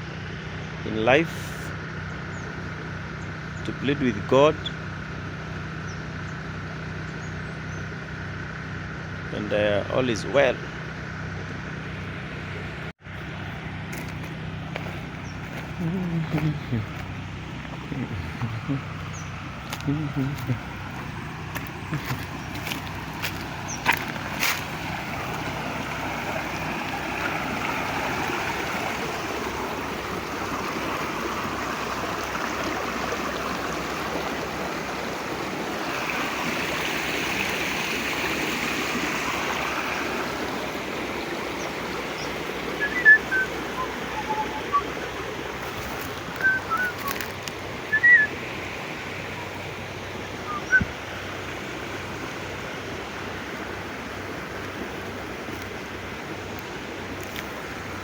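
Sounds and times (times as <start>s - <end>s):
high bird chirps: 17.7s - 21.1s, 42.2s - 45.2s, 46.3s - 47.2s, 47.9s - 48.3s, 50.4s - 50.9s
river rushing over rocks: 20.8s - 49.8s.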